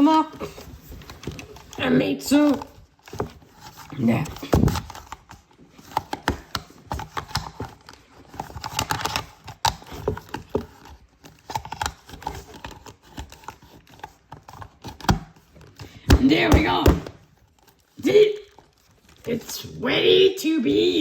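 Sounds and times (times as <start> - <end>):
headphones clicking and knocking: 14.2 - 17.3.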